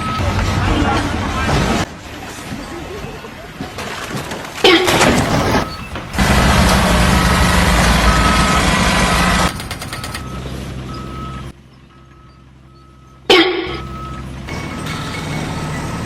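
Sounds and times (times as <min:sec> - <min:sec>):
diesel engine rumble: 0:00.0 - 0:16.0
reversing alarm beeping: 0:08.0 - 0:16.0.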